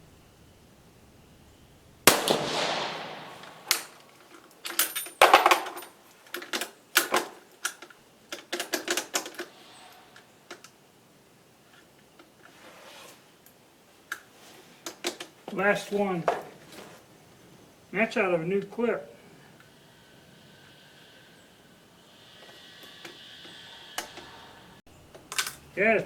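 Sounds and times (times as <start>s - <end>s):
rifle shot: 2.0s - 4.2s.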